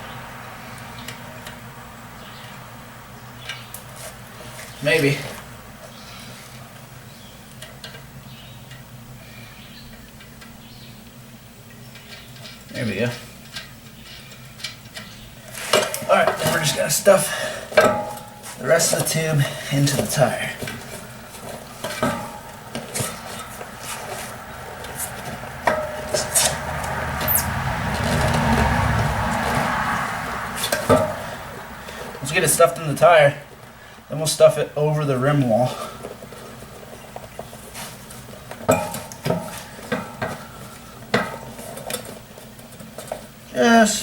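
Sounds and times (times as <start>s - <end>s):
rubber tire rubbing and handling: 3.3s - 7.5s, 12.0s - 33.9s, 35.3s - 44.0s.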